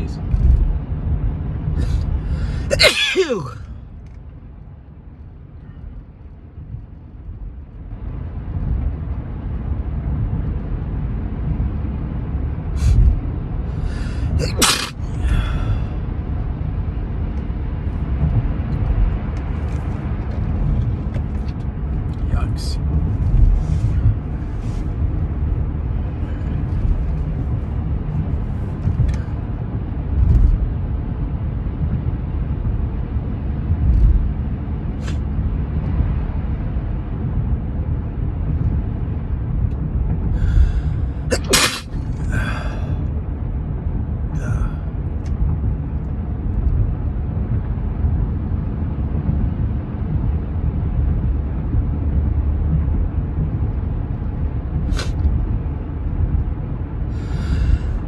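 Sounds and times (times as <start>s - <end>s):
steady low rumble: 0.0s - 58.0s
short breaths: 1.8s - 2.7s, 13.7s - 16.0s, 40.3s - 43.0s, 57.1s - 58.0s
person sneezing: 1.8s - 3.6s, 14.4s - 15.6s, 41.3s - 42.8s.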